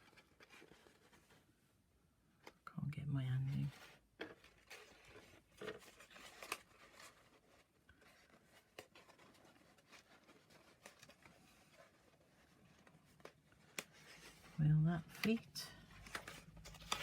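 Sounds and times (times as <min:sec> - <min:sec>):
card rustling and ticking: 0:03.6 - 0:17.0.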